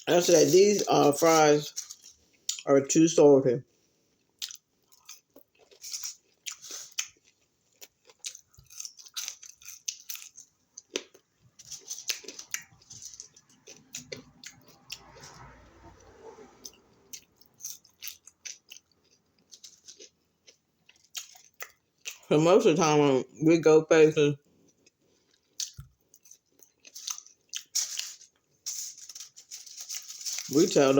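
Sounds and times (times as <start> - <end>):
person chewing food: 4.0 - 15.5, 16.6 - 22.3, 24.4 - 30.6.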